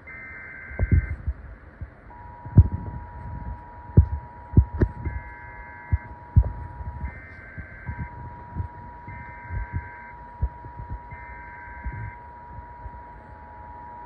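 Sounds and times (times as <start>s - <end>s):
steady two-tone alert signal: 0.0s - 1.2s, 2.1s - 14.0s
low thumps: 0.8s - 1.4s, 2.4s - 11.2s
two-pitch warbling data tones: 2.1s - 14.0s.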